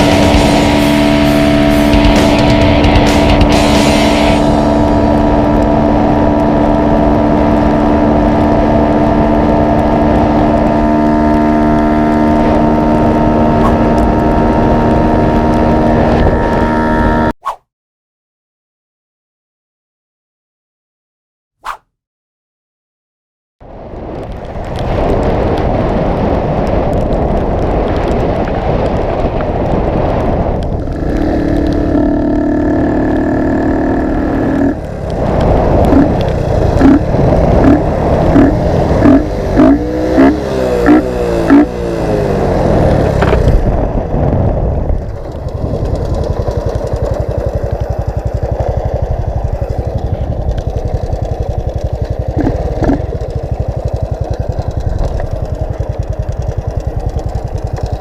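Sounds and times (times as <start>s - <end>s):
motorcycle engine revving: 0.0s - 17.6s, 30.3s - 58.0s.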